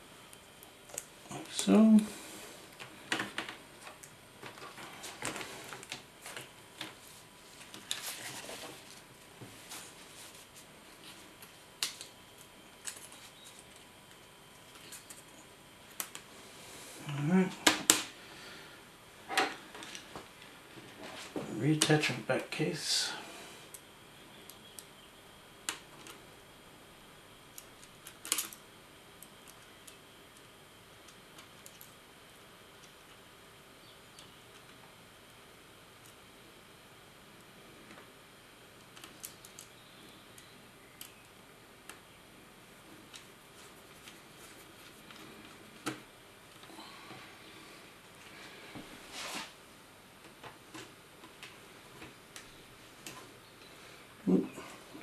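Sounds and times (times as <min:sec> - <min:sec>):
plastic laptop parts clicking: 0:27.5 - 0:28.6.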